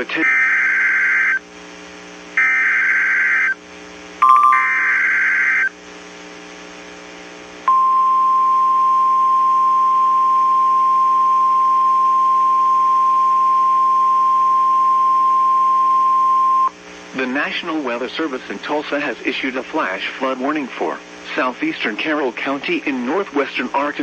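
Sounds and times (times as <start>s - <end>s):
steady warning alarm tone: 0.0s - 1.4s, 2.4s - 3.6s, 4.2s - 5.7s
constant low hum: 0.0s - 24.0s
warbling digital data tones: 4.2s - 5.7s.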